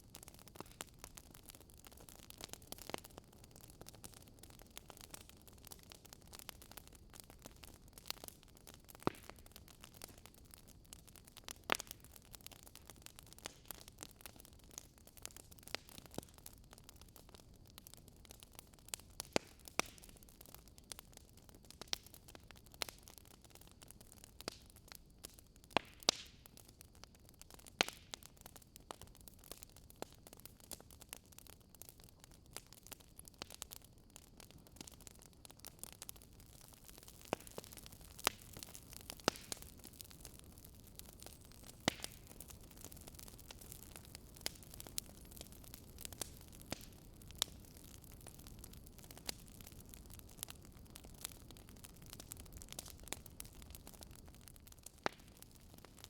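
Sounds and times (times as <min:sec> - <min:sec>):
fire pops and snaps: 0:00.0 - 0:56.0
fireplace crackling: 0:27.4 - 0:56.0.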